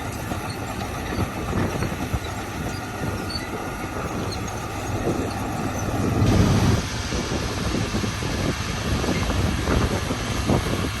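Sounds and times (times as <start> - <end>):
machine clanks and rattles: 0.0 - 6.4
bulldozer diesel engine running: 0.0 - 11.0.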